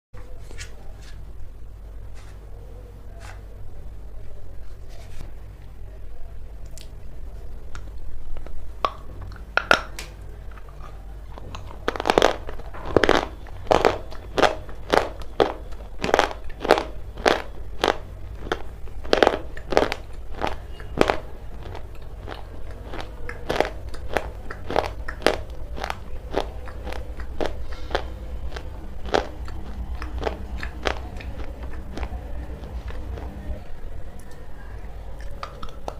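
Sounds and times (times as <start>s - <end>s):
chewing crunchy food: 7.7s - 34.4s, 35.1s - 35.9s.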